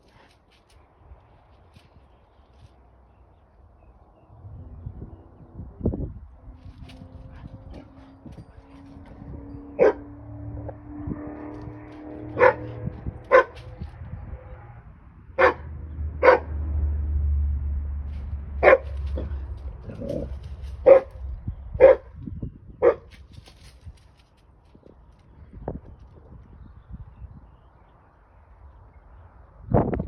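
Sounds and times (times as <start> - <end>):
dog barking: 9.7 - 10.1, 12.3 - 13.8, 15.4 - 16.6, 18.6 - 21.2, 21.8 - 22.1, 22.8 - 23.1.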